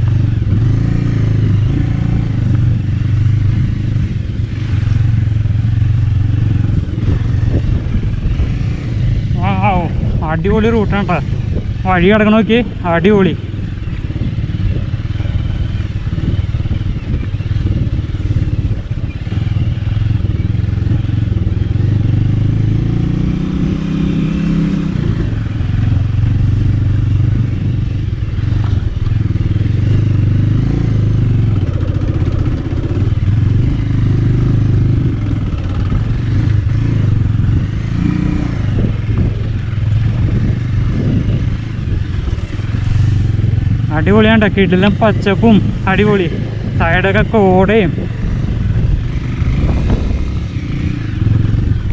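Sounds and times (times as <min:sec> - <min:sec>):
motorcycle engine under load: 0:00.0 - 0:51.9.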